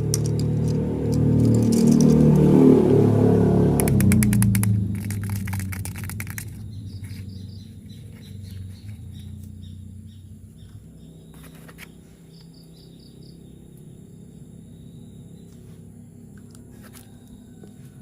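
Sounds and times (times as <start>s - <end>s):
low steady hum: 0.0s - 18.0s
birds chirping faintly: 5.2s - 18.0s.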